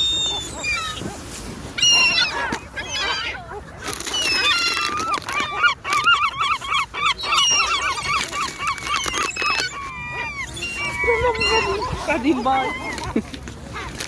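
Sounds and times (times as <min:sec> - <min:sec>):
flock of birds calling: 0:00.0 - 0:14.0.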